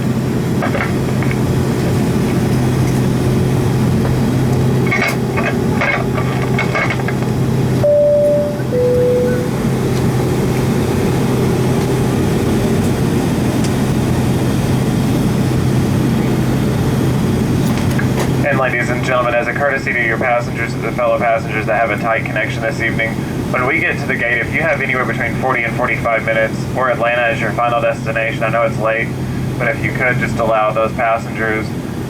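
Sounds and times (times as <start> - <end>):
aircraft cabin engine rumble: 0.0 - 32.0
two-note chime: 7.8 - 10.0.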